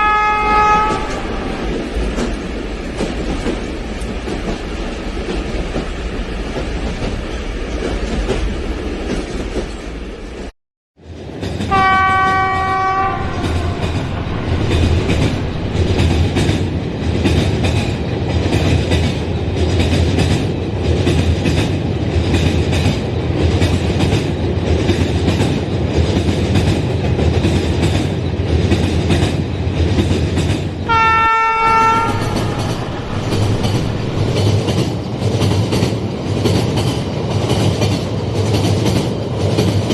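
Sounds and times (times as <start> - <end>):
train horn blasts: 0.0 - 1.6, 11.7 - 14.5, 30.9 - 33.0
train rumbling and clattering: 0.0 - 39.9.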